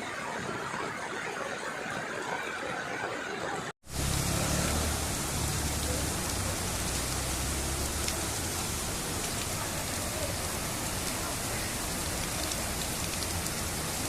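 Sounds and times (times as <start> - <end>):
heavy rain hissing: 3.8 - 14.0.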